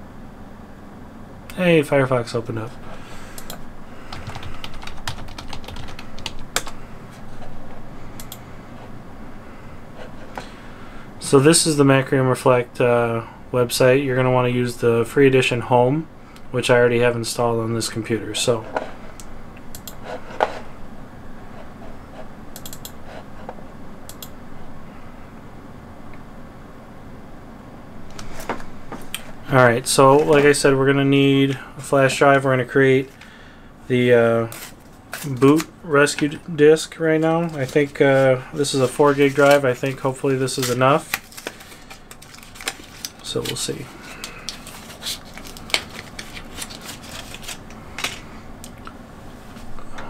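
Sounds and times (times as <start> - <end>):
computer mouse clicks: 3.4 - 3.6, 8.2 - 8.4, 19.7 - 20.0, 22.6 - 23.0, 24.1 - 24.3.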